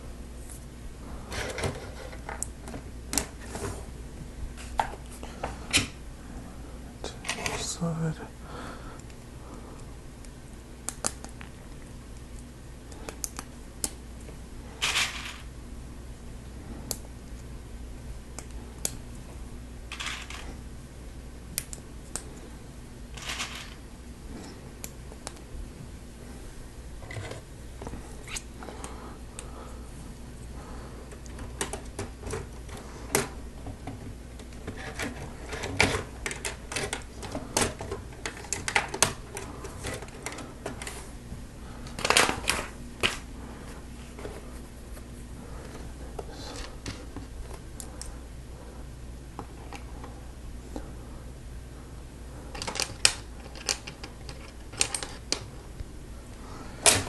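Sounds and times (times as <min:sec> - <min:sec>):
plastic parts clicking: 0:34.6 - 0:40.9, 0:52.5 - 0:55.5.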